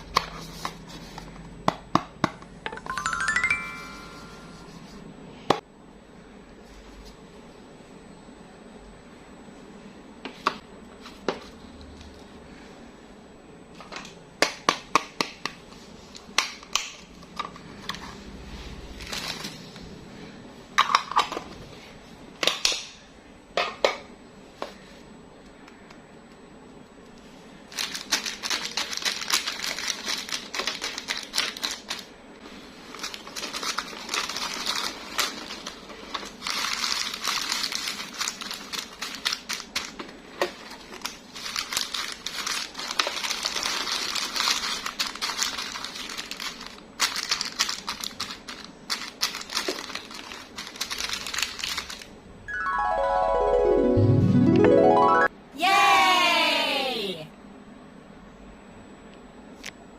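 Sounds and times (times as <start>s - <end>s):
plastic wrapper crinkling: 27.7s - 52.1s.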